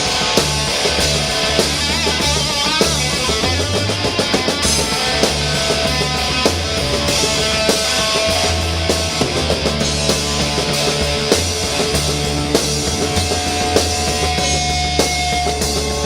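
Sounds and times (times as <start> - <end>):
drums keeping a steady beat: 0.0 - 16.0
electric guitar: 0.0 - 16.0
sustained bass line: 0.0 - 16.0.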